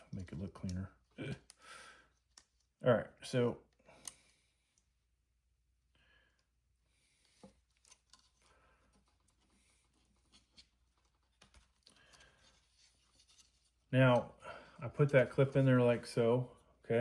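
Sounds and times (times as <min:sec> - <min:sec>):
faint clicks of small parts: 0:00.1 - 0:02.8, 0:03.7 - 0:05.0, 0:07.2 - 0:14.4.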